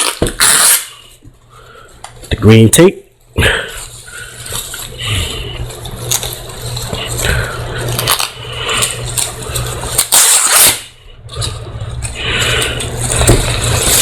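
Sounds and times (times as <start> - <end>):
tape ripping: 0.0 - 1.1, 5.7 - 7.2, 7.9 - 11.6, 12.6 - 14.0.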